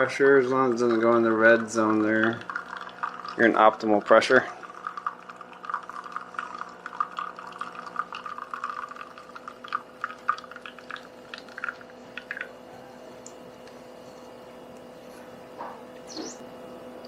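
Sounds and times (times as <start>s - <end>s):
espresso dripping into cup: 0.0s - 15.0s
espresso machine pump humming: 0.0s - 17.0s.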